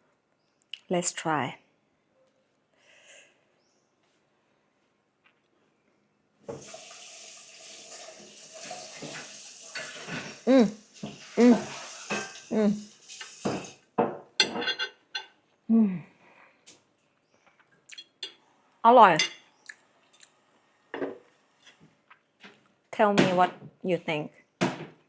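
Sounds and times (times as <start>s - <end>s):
wordless vocal sounds of enjoyment: 10.4s - 10.8s, 12.5s - 12.8s.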